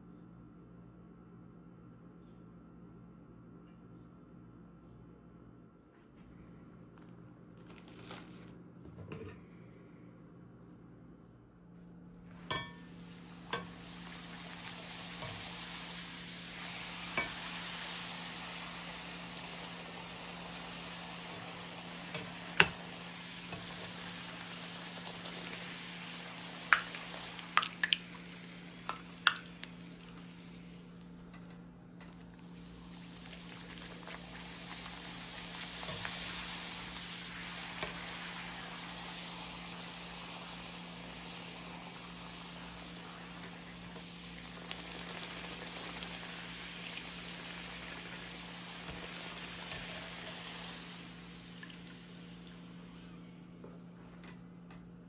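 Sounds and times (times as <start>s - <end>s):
food sizzling in a pan: 12.5s - 31.0s, 32.4s - 53.2s.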